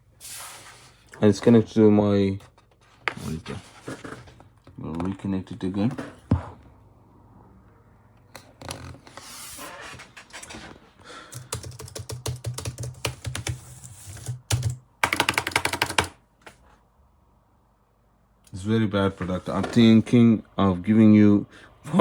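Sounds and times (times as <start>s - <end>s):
typing on laptop keyboard: 11.2s - 16.2s.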